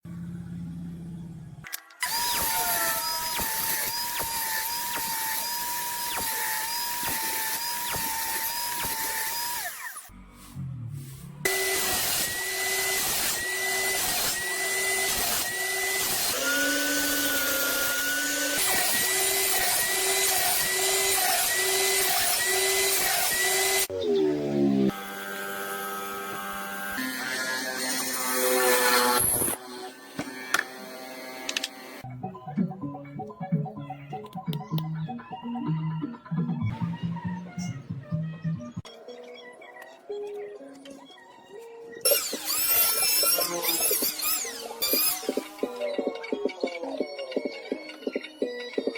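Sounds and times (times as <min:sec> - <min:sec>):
electric power tool running: 0:02.0 - 0:10.1, 0:11.5 - 0:23.9, 0:24.5 - 0:32.0.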